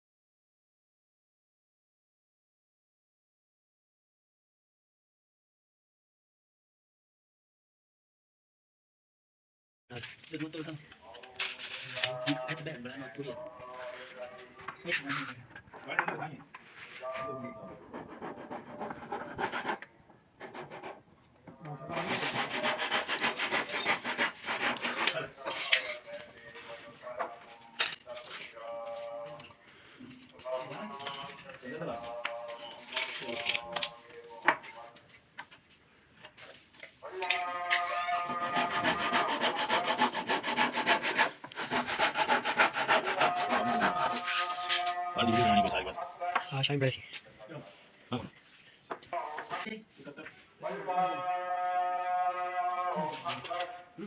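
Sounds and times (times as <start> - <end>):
rapid sanding on wood: 17.9 - 19.8, 21.9 - 25.6, 38.3 - 44.6
hand tool rasping over wood: 21.9 - 26.0, 38.0 - 45.0.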